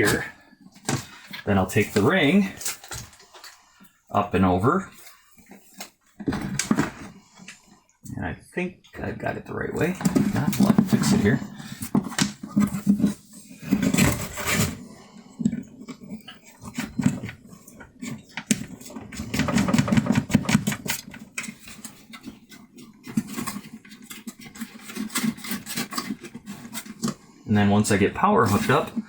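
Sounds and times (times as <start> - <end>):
hands handling plastic parts: 0.0 - 3.7, 9.9 - 27.2.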